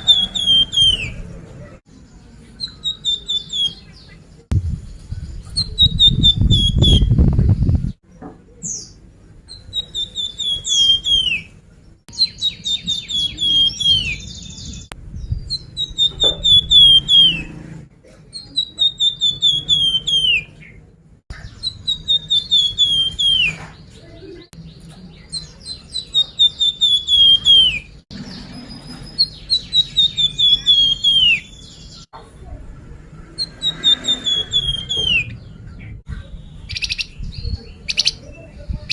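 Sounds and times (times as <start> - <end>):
bird song with descending notes: 0.0 - 17.6, 18.4 - 38.5
loud low rumble: 4.5 - 8.0.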